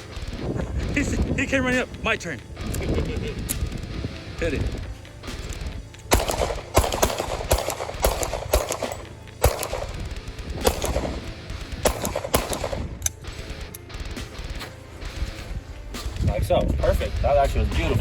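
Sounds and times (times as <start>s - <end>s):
gunshots: 2.6s - 16.3s.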